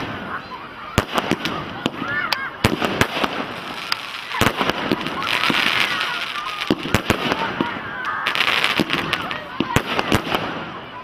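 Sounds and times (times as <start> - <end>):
fireworks bangs: 0.0 - 11.0
fireworks hissing crackle: 0.0 - 11.0.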